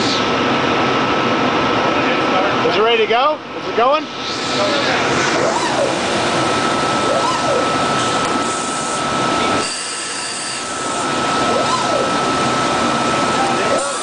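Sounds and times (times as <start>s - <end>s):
thin steady whine: 0.0s - 14.0s
vacuum pump and dust collector rush: 0.0s - 14.0s
router motor whine rising and falling: 4.2s - 14.0s.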